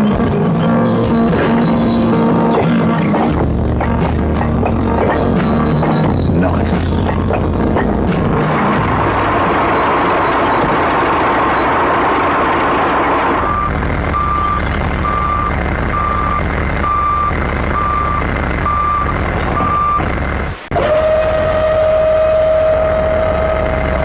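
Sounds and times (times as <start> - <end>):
truck engine rumble: 0.0 - 24.0
reversing alarm beeps: 9.0 - 12.4, 13.4 - 20.1.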